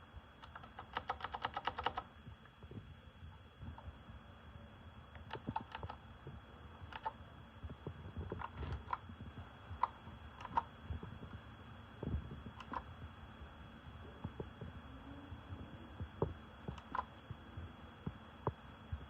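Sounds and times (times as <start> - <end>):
mechanical keyboard key clicks: 0.4 - 2.0, 5.2 - 6.0, 6.9 - 7.2, 9.8 - 10.7, 12.6 - 12.8, 16.7 - 17.1.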